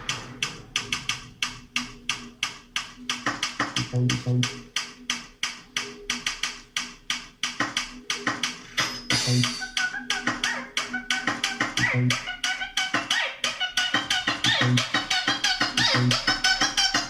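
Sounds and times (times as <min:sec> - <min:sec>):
deep bass notes: 0:03.8 - 0:04.5, 0:09.1 - 0:09.5, 0:11.8 - 0:12.2, 0:14.6 - 0:14.8, 0:15.9 - 0:16.2.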